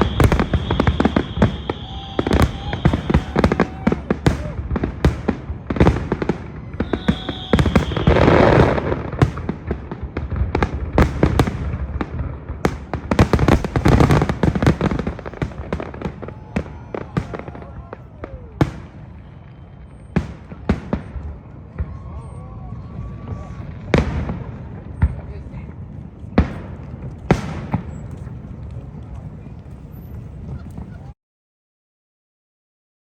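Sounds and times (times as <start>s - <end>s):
high steady whistle: 0.0s - 4.5s, 6.7s - 8.8s
fireworks bursts and booms: 0.0s - 31.2s
fireworks crackling: 0.0s - 31.2s.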